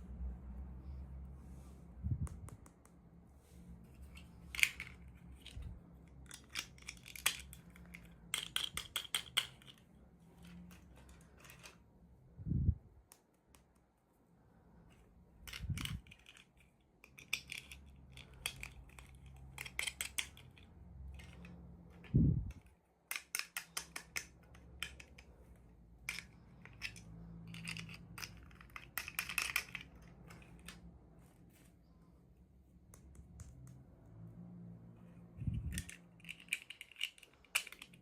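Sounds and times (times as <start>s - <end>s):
plastic toy pieces clicking: 4.4s - 9.8s, 15.4s - 25.3s, 26.0s - 30.9s, 35.5s - 38.0s.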